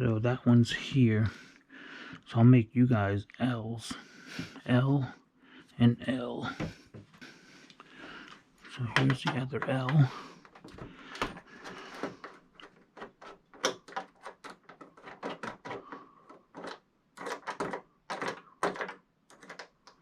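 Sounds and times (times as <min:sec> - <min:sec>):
small screws clicking and tapping: 0:12.0 - 0:20.0.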